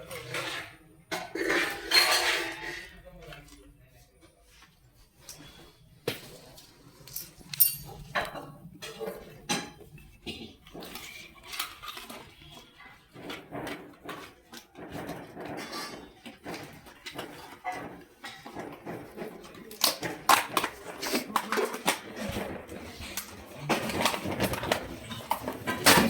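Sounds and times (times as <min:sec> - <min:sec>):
metal tools clinking: 0:07.0 - 0:08.4.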